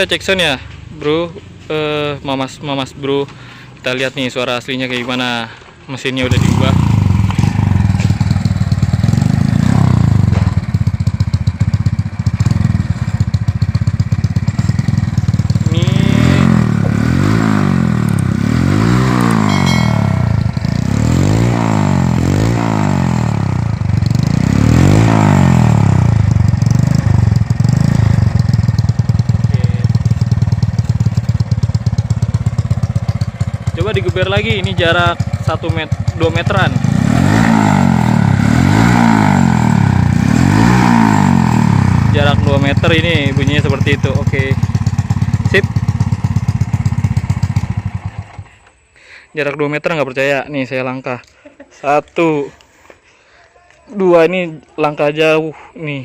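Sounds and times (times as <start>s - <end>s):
motorcycle engine idling and revving: 6.2s - 48.9s.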